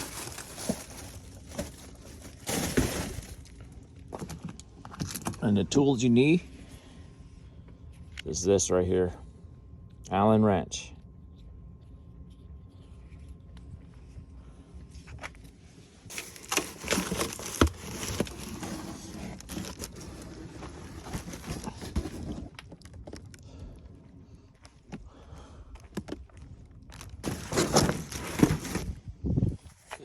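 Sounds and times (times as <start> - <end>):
rustling and crinkling: 0.0 - 5.7, 11.3 - 23.4, 25.8 - 30.0.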